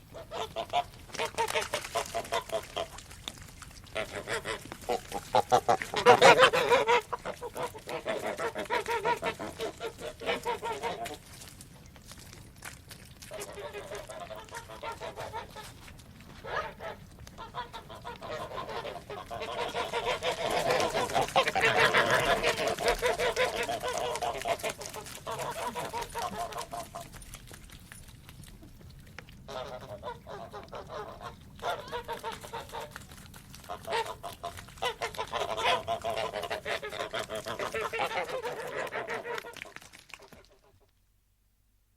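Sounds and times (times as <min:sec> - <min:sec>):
geese honking: 0:04.0 - 0:11.2, 0:16.4 - 0:27.1, 0:29.5 - 0:33.0, 0:33.6 - 0:39.5.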